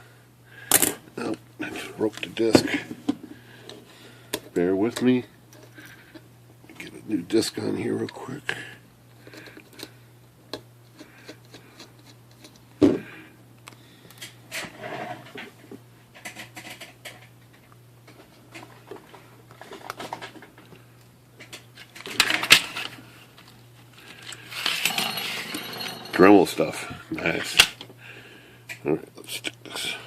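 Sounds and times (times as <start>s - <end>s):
small metal parts clattering: 24.2s - 26.6s.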